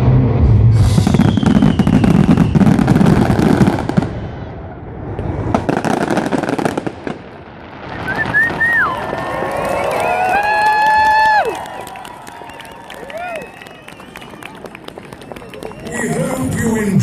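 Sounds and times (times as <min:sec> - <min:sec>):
fireworks booming and crackling: 0:00.6 - 0:11.4.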